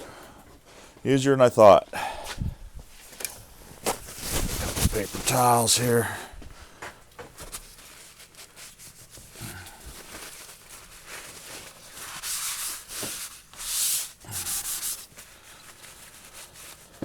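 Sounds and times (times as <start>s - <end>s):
paper towels wiping: 3.9s - 6.3s, 7.4s - 17.0s.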